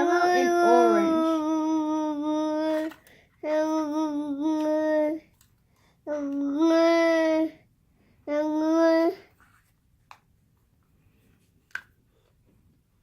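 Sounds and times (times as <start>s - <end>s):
child singing held notes: 0.0s - 5.3s.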